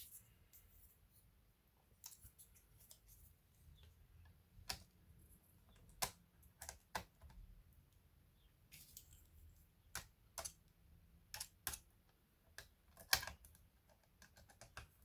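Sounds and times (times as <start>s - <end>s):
clicks of small laptop parts: 12.5s - 15.0s.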